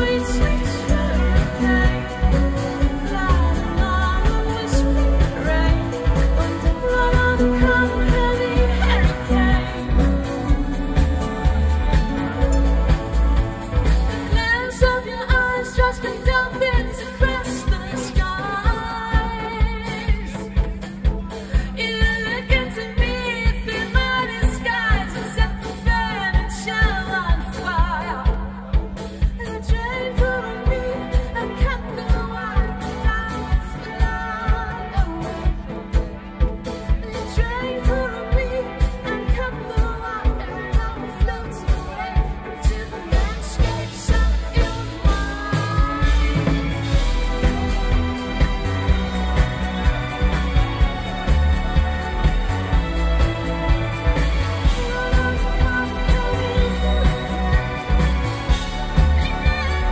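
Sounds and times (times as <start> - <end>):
wordless melody line: 0.0 - 18.4, 42.1 - 59.9
live pop band playing: 0.0 - 59.9
steady drum beat: 0.0 - 59.9.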